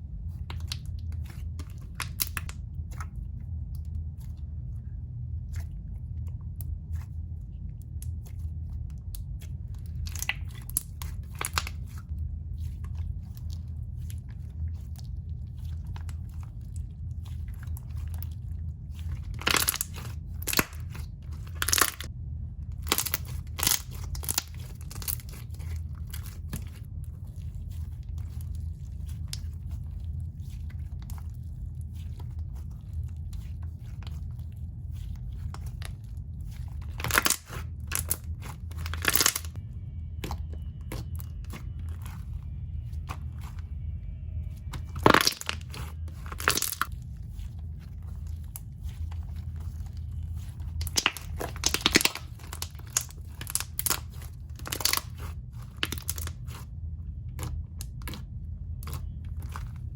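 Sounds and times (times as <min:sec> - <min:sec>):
steady low hum: 0:00.0 - 0:59.9
slime popping and crackling: 0:00.4 - 0:03.0, 0:09.1 - 0:22.1, 0:22.8 - 0:39.6, 0:44.7 - 0:56.6.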